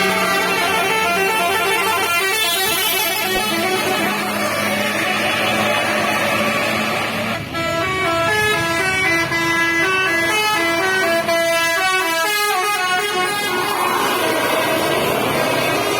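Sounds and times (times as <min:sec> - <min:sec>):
multi-trumpet air horn melody: 0:00.0 - 0:15.9
rushing noise: 0:12.8 - 0:15.9.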